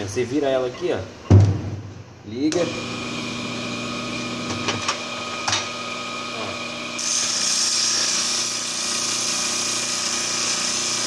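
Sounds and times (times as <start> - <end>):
electric motor humming: 2.5 - 11.0.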